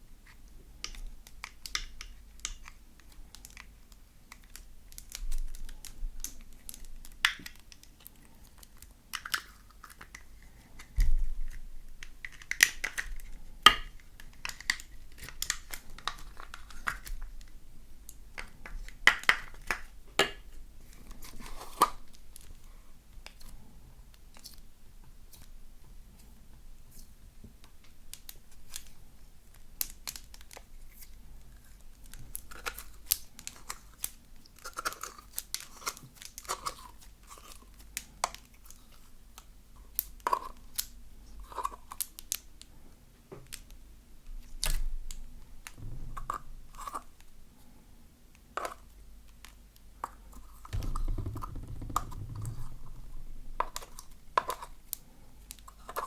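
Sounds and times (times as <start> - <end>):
sticky clicks and crackles: 0.8 - 17.5, 28.1 - 42.4, 48.6 - 56.0
slime being kneaded by hand: 50.7 - 55.0.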